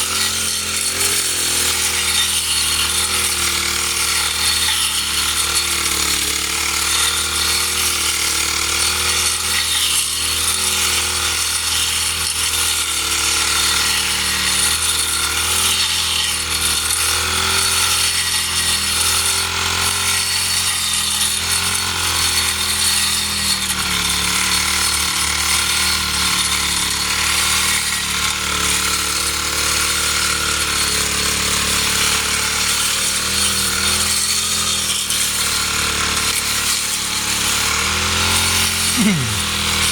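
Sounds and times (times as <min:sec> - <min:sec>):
lawn mower engine running: 0:00.0 - 0:08.9.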